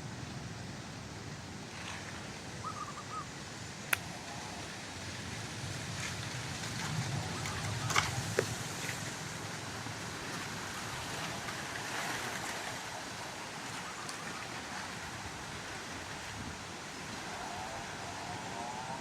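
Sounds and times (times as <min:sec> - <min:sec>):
wind rustling leaves: 0:00.0 - 0:19.0
wind buffeting microphone: 0:03.8 - 0:19.0.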